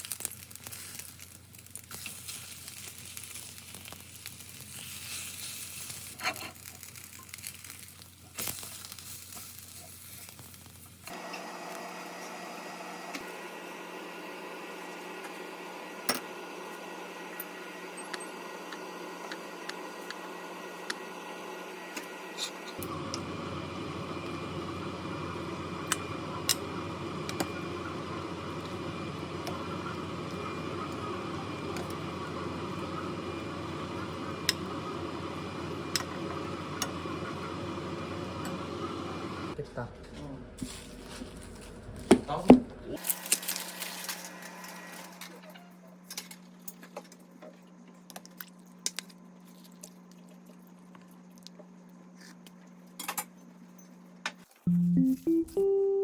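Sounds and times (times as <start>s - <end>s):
food sizzling in a frying pan: 0.0s - 12.1s
appliance hum: 0.0s - 56.0s.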